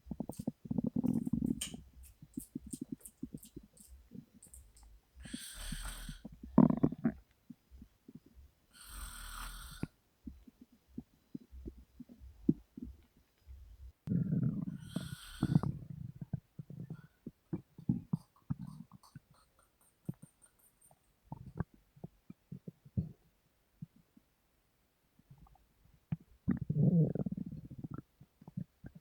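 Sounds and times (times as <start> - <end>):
stomach gurgling and rumbling: 0.0 - 20.5, 21.2 - 24.3, 25.2 - 29.0
woman breathing heavily: 5.2 - 6.4.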